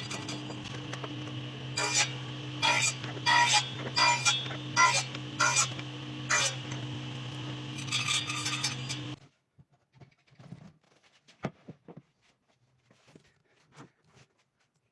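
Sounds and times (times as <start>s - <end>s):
steady hum: 0.0s - 9.2s.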